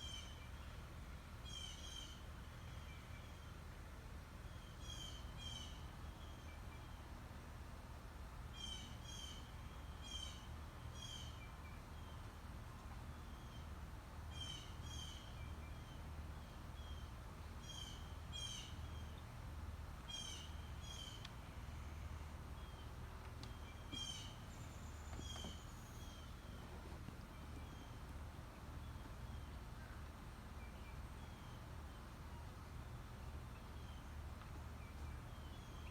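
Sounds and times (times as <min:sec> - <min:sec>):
steady low hum: 0:00.0 - 0:35.9
birds calling: 0:22.6 - 0:28.0.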